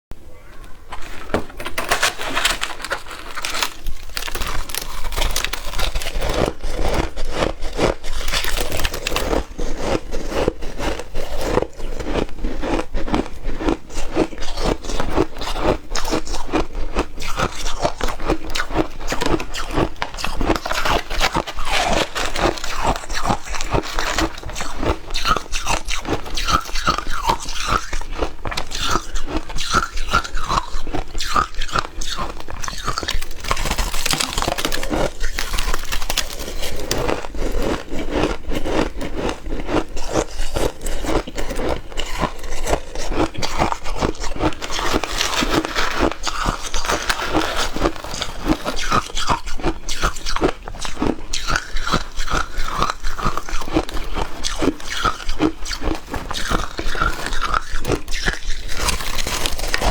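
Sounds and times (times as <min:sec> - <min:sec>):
chewing crunchy shaved ice: 0:01.6 - 0:59.9.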